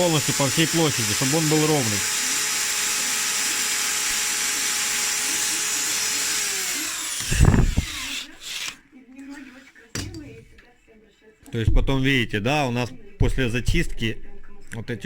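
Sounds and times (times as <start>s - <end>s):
electric drill spinning: 0.0s - 8.8s
file scraping metal: 4.8s - 9.7s.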